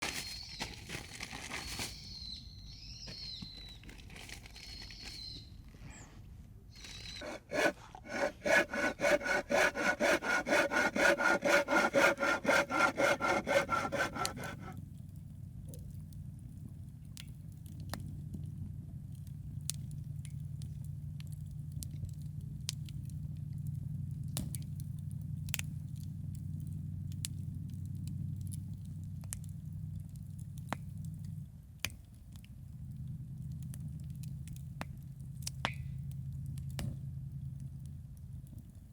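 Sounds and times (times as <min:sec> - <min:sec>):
hand saw cutting wood: 0:06.8 - 0:14.8.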